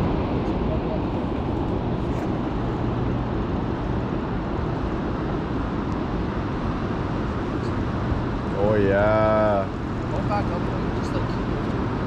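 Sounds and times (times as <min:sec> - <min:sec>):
boat motor humming: 0:00.0 - 0:12.0
rushing wind: 0:00.0 - 0:12.0
water noise: 0:00.0 - 0:12.0.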